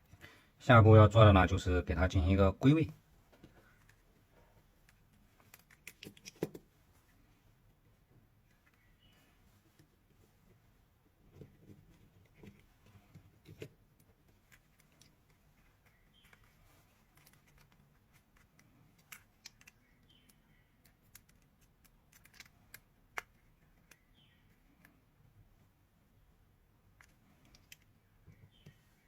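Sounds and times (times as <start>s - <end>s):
plastic and metal parts clicking: 4.9s - 6.6s, 17.1s - 25.0s, 27.0s - 28.8s.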